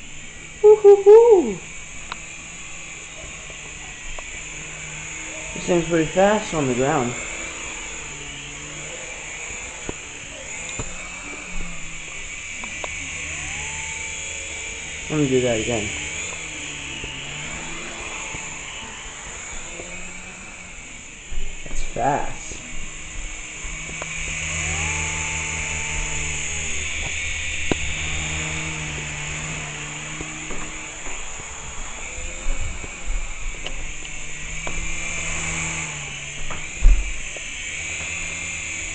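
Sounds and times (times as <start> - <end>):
rc helicopter buzzing whine: 0.0 - 38.9
sharp clicks: 2.0 - 2.3, 9.4 - 15.1, 23.7 - 31.2.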